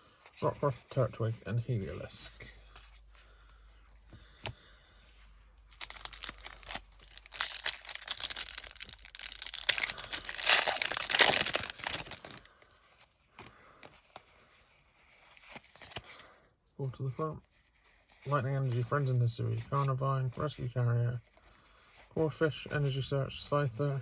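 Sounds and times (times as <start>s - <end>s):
foil wrapper tearing and crinkling: 5.7s - 12.5s.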